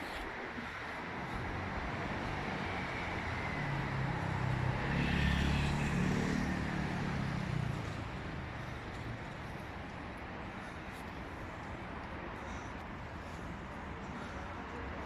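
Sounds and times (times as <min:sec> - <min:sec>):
street noise: 0:00.0 - 0:15.0
vehicle engine passing by: 0:03.2 - 0:08.5.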